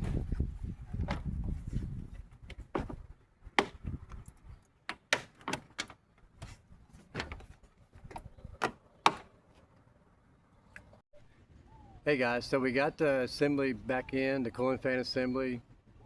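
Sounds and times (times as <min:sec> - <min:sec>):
sharp clicks and knocks: 0:03.6 - 0:06.5.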